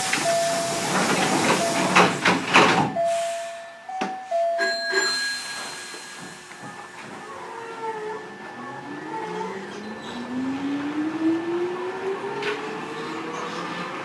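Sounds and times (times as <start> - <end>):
air hissing from doors: 0.0 - 3.7, 5.2 - 7.0
two-note door chime: 0.2 - 0.9, 1.5 - 2.1, 2.9 - 8.9.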